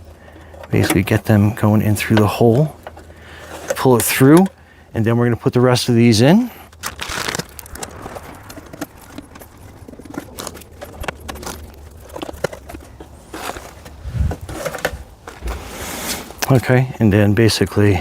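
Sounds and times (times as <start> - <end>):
plastic clicks and scraping: 6.6 - 16.6.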